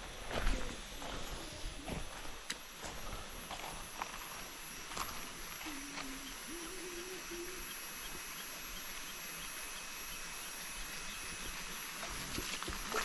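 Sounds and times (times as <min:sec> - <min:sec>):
faint low wavering hum: 0:00.0 - 0:13.0
insects hissing: 0:00.0 - 0:13.0.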